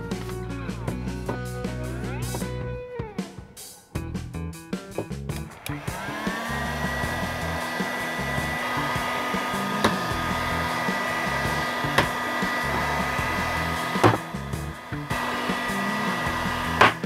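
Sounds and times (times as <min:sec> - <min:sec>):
heat gun blowing hot air: 0:05.5 - 0:17.0.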